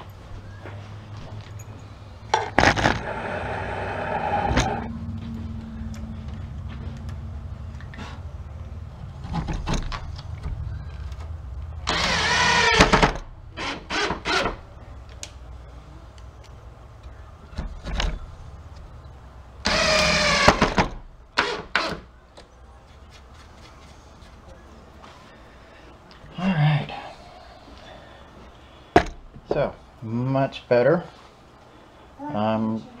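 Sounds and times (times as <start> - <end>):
low steady hum: 0.0 - 33.0
drill driving screws into wood: 2.6 - 4.8, 11.9 - 14.6, 19.6 - 22.1.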